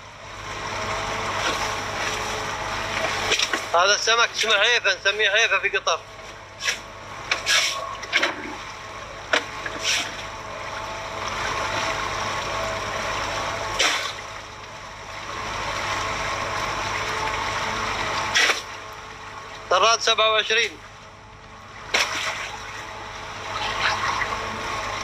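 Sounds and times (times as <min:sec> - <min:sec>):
water rushing and splashing: 0:00.0 - 0:25.0
short splashes or knocks: 0:13.7 - 0:14.6, 0:18.2 - 0:18.8, 0:21.8 - 0:22.9.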